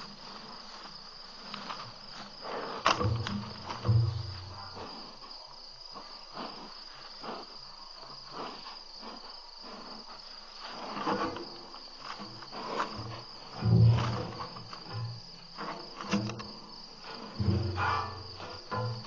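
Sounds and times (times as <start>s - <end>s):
cricket chorus trilling: 0.0s - 19.0s
low thump-like rumble: 3.0s - 4.7s.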